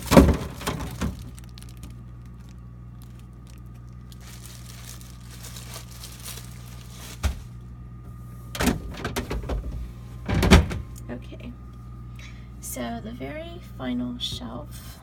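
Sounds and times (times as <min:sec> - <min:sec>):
plastic wrap crinkling: 0:00.0 - 0:07.7
refrigerator low hum: 0:00.0 - 0:15.0.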